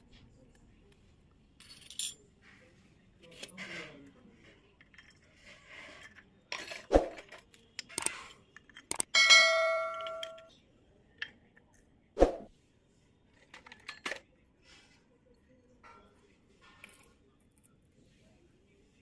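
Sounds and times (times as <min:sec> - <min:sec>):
toy kitchen pieces knocking: 0:06.5 - 0:10.5
ringing ding: 0:09.2 - 0:10.5.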